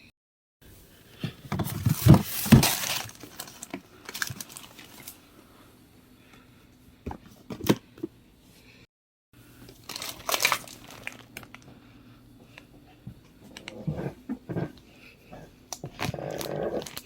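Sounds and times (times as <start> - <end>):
packaging crinkling rustle: 1.6 - 5.2, 9.7 - 11.7.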